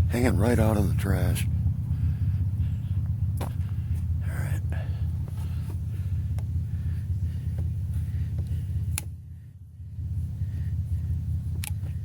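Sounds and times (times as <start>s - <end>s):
vehicle engine rumbling: 0.0s - 12.0s
sharp click: 11.6s - 11.8s.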